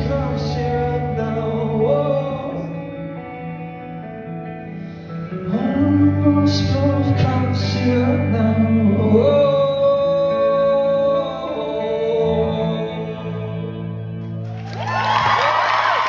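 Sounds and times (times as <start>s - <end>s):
man singing: 0.0s - 3.2s, 5.2s - 14.2s
guitar accompaniment: 0.0s - 16.0s.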